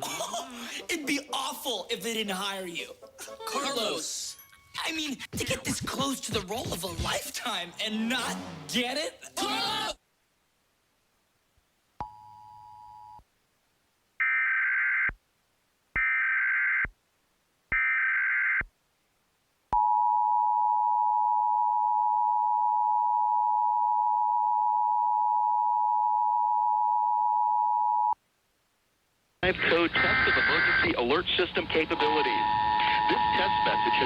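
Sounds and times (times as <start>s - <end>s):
two-tone attention signal: 32.0s - 34.0s.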